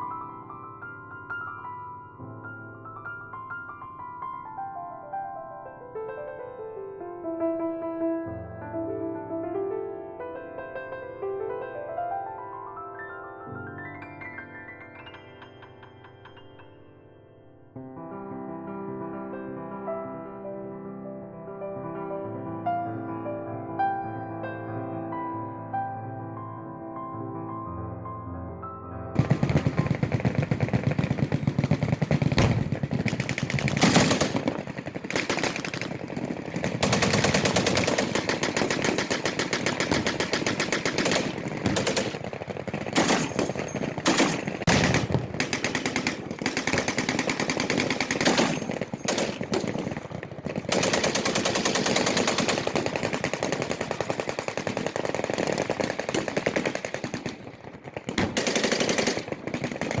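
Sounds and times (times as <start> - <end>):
machine guns firing bursts: 29.2 - 60.0.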